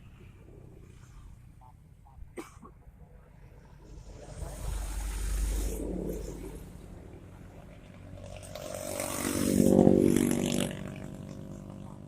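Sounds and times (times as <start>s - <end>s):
small engine passing by: 3.6s - 12.0s.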